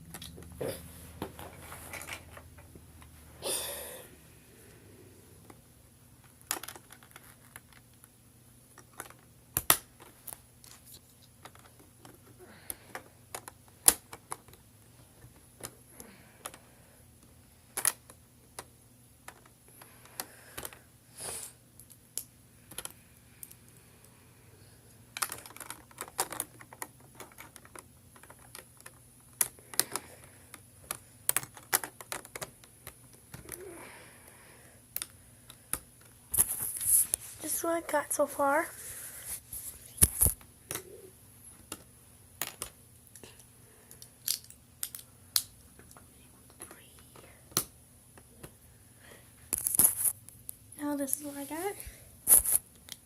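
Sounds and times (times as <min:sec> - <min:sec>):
plastic parts snapping together: 0:08.8 - 0:10.1, 0:12.9 - 0:14.6, 0:43.9 - 0:46.0.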